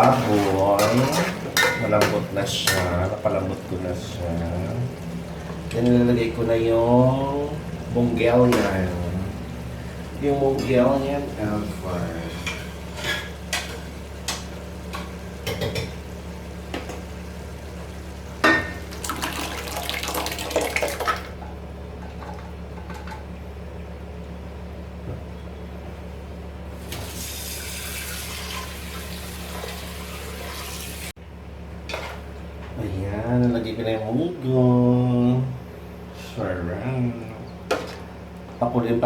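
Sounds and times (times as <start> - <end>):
low hum: 0.0 - 19.1.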